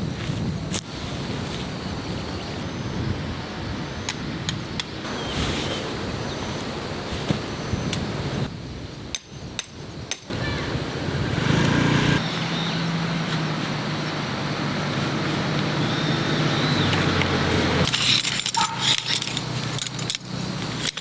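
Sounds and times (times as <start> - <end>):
engine running at low revs: 10.8 - 17.9.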